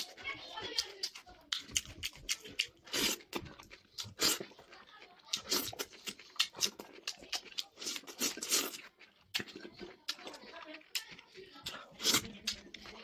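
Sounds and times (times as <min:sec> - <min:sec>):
chewing and slurping noodles: 0:00.0 - 0:13.0.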